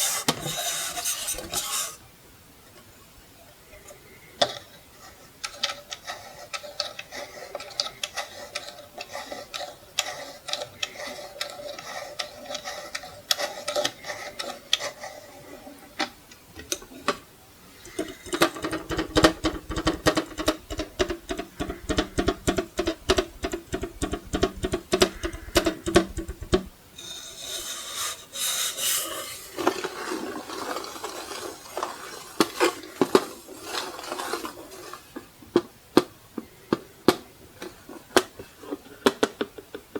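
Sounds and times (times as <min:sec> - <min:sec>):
scraping and rubbing on clock: 0:00.0 - 0:02.0, 0:04.9 - 0:16.1, 0:17.7 - 0:35.2
fingertips tapping clock case: 0:17.8 - 0:26.8.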